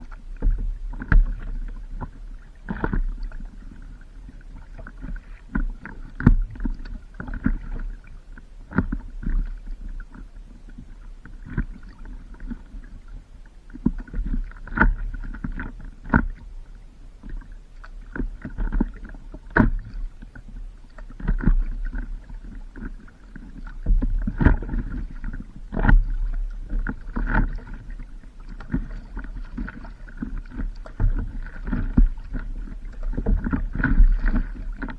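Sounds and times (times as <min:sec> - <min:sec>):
water splashing against paddleboard: 0:13.7 - 0:34.9.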